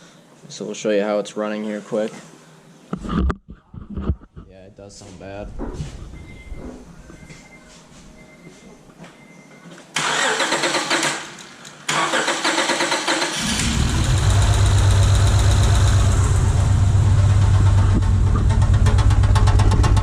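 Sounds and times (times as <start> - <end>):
car engine cranking on starter: 10.0 - 16.8
engine idling roughly with misfire: 11.9 - 20.0.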